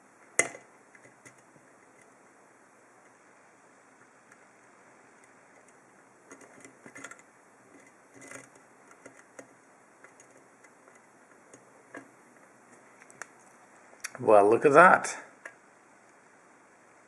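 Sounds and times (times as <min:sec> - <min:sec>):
lock pick clicking and scraping: 0:05.6 - 0:12.1.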